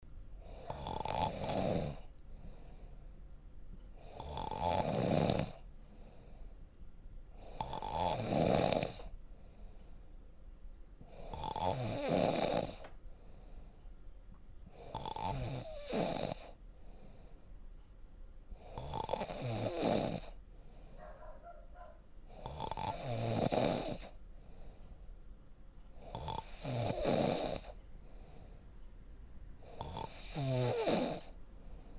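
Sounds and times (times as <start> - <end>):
quiet breathing: 0.1 - 10.4, 11.0 - 31.9
person snoring: 0.4 - 2.1, 4.0 - 5.7, 7.4 - 9.1, 11.1 - 12.8, 14.8 - 16.6, 18.6 - 20.4, 22.3 - 24.2, 26.0 - 27.8, 29.6 - 31.4.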